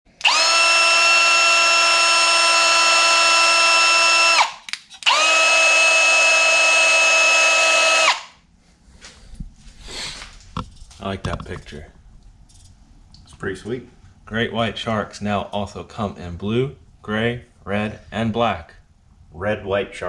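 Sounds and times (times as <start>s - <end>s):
power tool high-pitched whine: 0.2s - 8.3s.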